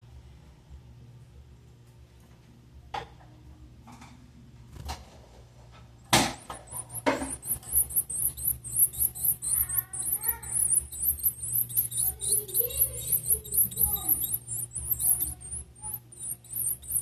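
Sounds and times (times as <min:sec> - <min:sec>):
nestlings cheeping: 0:06.1 - 0:17.0.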